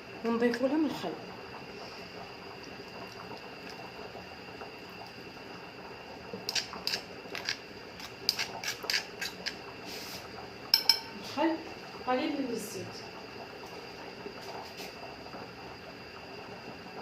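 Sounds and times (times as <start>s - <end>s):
utensil knocking against bowl: 10.8s - 11.1s.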